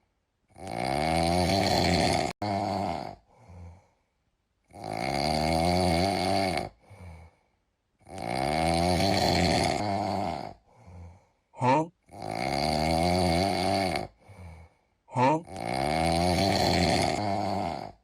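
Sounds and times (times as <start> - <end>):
person snoring: 0.5 - 4.0, 4.7 - 7.4, 8.0 - 18.0
soft breath: 3.2 - 4.2, 6.8 - 7.7, 10.6 - 11.8, 14.1 - 15.4.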